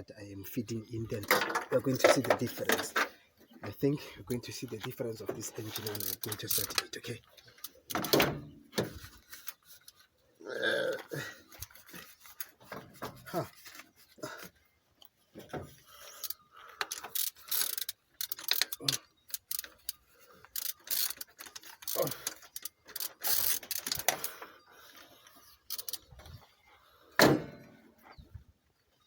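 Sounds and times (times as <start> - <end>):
ratchet spanner clicking: 5.7 - 6.8, 16.1 - 24.2, 25.7 - 26.0.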